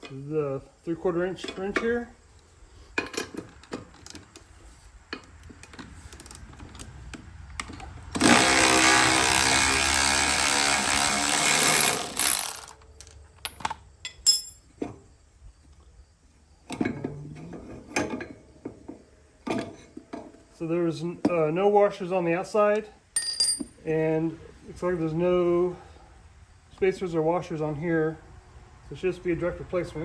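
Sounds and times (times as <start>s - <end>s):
power tool motor running: 8.1s - 12.8s
metal tool clicks and clanks: 11.4s - 14.6s, 23.2s - 23.7s.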